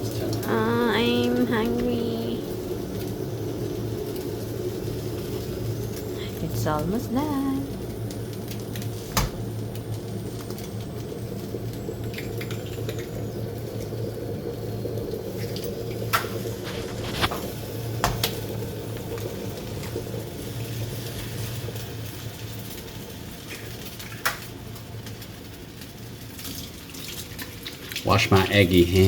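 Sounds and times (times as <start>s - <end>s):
steady low hum: 0.0s - 22.8s.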